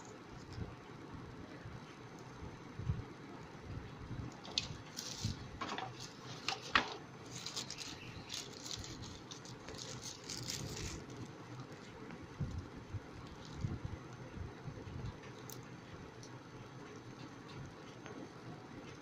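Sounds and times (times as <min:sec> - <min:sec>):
packaging clicks and crinkles: 0:04.4 - 0:12.6, 0:13.2 - 0:13.8.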